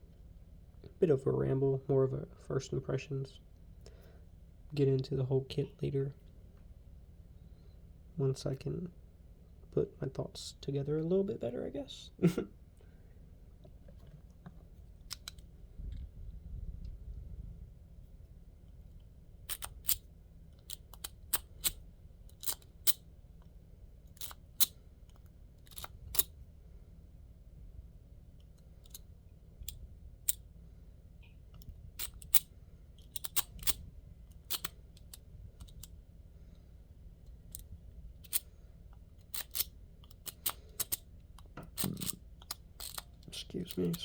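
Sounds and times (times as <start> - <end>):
lock picks clicking in lock: 15.0 - 15.4, 19.5 - 23.0, 24.1 - 26.3, 28.8 - 30.4, 31.6 - 35.9, 37.5 - 38.5, 39.2 - 44.0.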